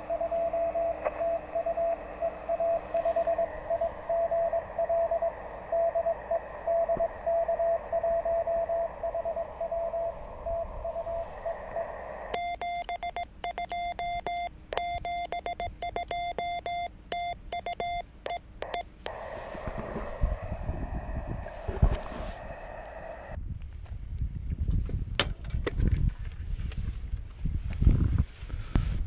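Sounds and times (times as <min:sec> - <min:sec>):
morse code tone: 0:00.0 - 0:11.2, 0:12.3 - 0:19.2
receiver hiss: 0:00.0 - 0:23.4
morse sidetone with sharp clicks: 0:12.3 - 0:19.2.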